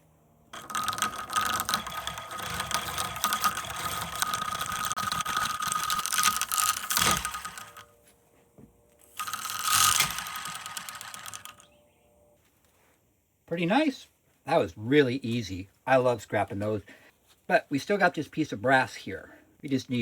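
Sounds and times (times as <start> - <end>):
power tool whining and rattling: 0.5 - 8.0, 9.0 - 11.8.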